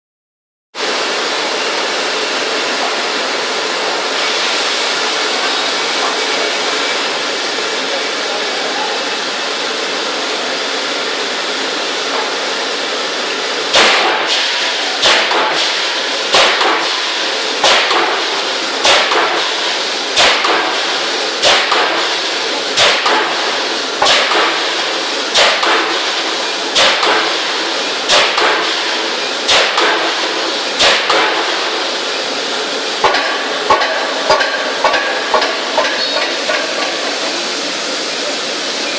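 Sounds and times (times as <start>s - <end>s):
rushing workshop noise: 0.8s - 38.9s
forging hammer blows with metallic ring: 33.0s - 37.0s.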